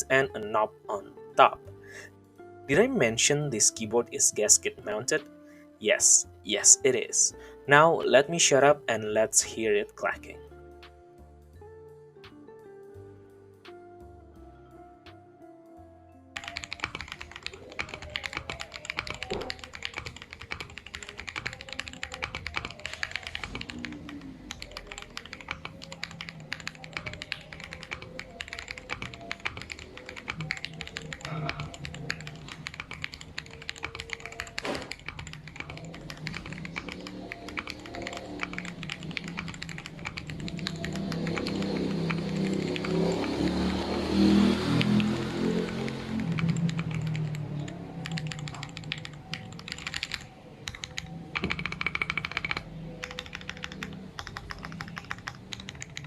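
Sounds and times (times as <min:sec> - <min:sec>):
background music: 0:00.0 - 0:56.0
typing on mechanical keyboard: 0:16.4 - 0:43.9, 0:44.5 - 0:56.0.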